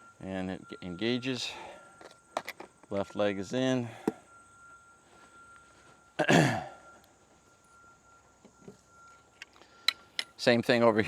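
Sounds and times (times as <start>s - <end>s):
man clearing his throat: 6.2s - 6.8s.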